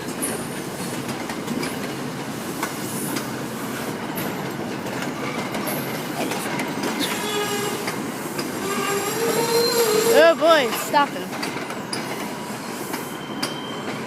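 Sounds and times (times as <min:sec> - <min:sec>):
train rumbling: 0:00.0 - 0:14.0
wheel or brake squeal: 0:06.9 - 0:08.0, 0:08.6 - 0:11.0, 0:11.8 - 0:14.0.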